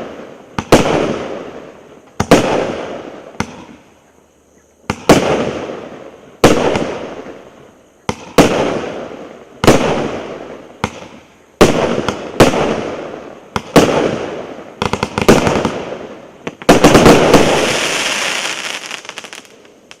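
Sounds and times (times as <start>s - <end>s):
fireworks bangs: 0.0s - 1.6s, 4.8s - 7.4s, 8.1s - 20.0s
fireworks crackle: 10.8s - 20.0s.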